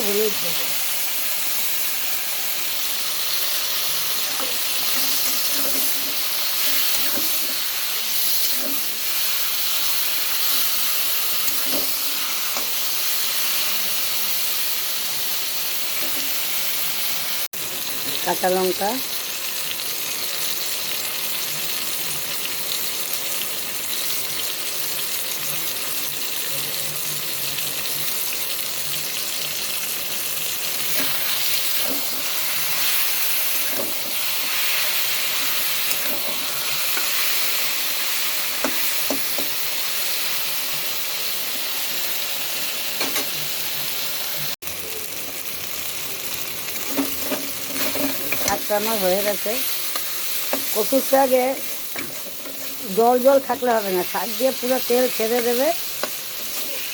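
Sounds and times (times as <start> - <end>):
food sizzling in oil: 0.0 - 56.9
stirring clicks and scrapes: 46.9 - 50.8.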